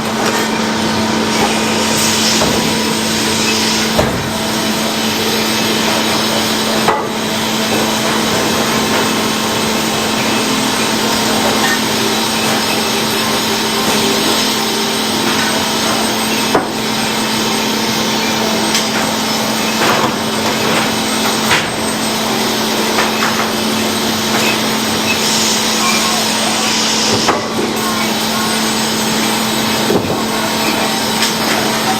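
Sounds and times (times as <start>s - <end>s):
sawmill machinery humming: 0.0s - 31.9s.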